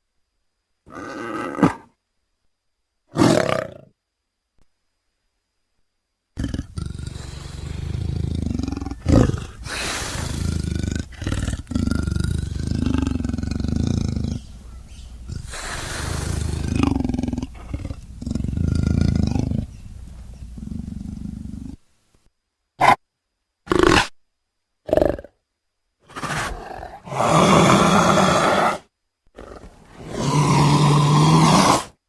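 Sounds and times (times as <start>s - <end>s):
leopard growling and roaring: 6.4s - 21.8s, 26.1s - 32.0s.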